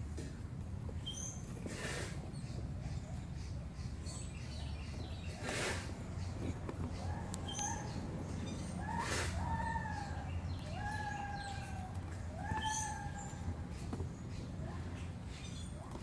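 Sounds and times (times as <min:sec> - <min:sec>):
animal whistled calls: 0:08.8 - 0:10.1.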